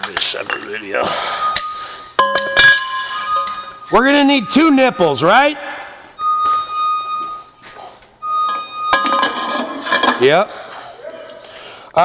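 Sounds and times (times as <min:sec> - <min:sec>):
electronic beeper tone: 0:01.3 - 0:05.6, 0:06.2 - 0:07.6, 0:08.2 - 0:10.2.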